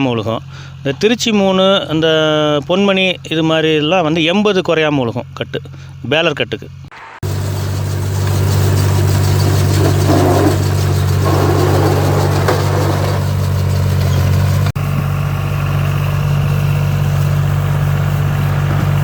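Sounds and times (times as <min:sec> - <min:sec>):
tractor engine running: 0:06.9 - 0:19.0.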